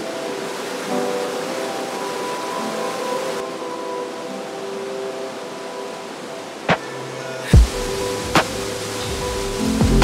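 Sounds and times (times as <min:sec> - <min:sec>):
slow background music: 0:00.0 - 0:10.0
steady hiss: 0:00.0 - 0:10.0.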